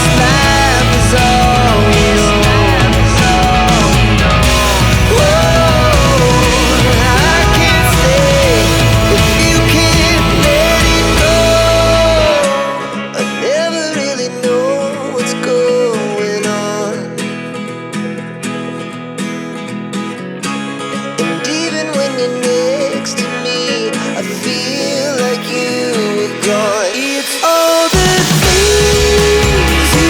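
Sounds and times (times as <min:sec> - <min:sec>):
heavy bass: 0:00.0 - 0:12.6, 0:28.0 - 0:30.0
song with plucked guitar: 0:00.0 - 0:30.0.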